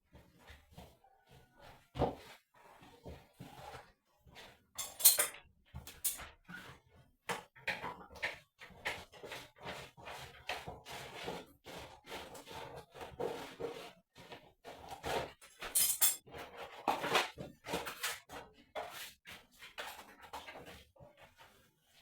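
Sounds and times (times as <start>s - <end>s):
knocks and clinks of objects: 4.8s - 6.2s, 15.6s - 16.2s.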